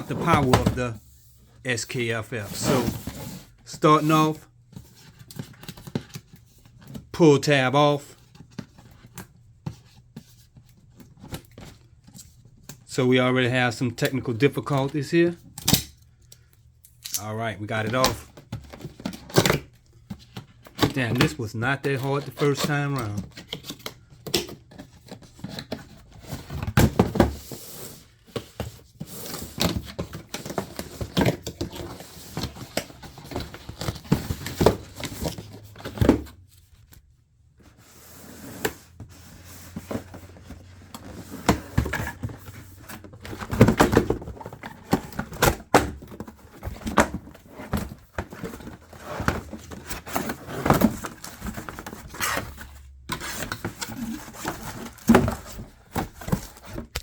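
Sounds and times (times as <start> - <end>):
wrapping rustling and scraping: 0.0 - 6.9, 17.7 - 57.0
knocks and thuds of handling: 38.6 - 57.0.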